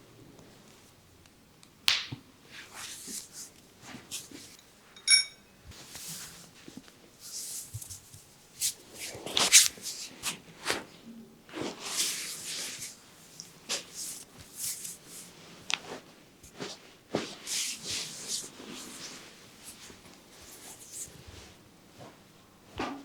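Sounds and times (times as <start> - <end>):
sharp ringing click: 5.0 - 5.4.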